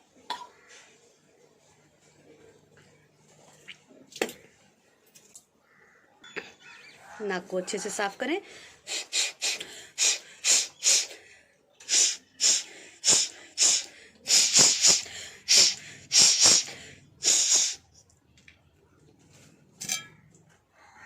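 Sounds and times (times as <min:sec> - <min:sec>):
sharp nasal snorts: 0:08.9 - 0:11.1, 0:11.9 - 0:17.8.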